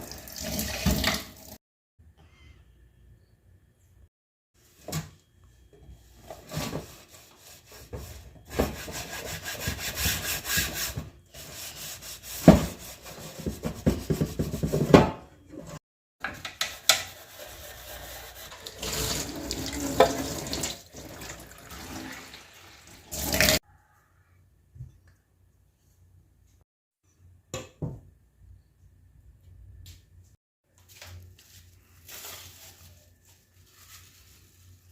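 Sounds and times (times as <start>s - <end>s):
tap water running into sink: 0.0s - 1.5s, 18.5s - 23.6s.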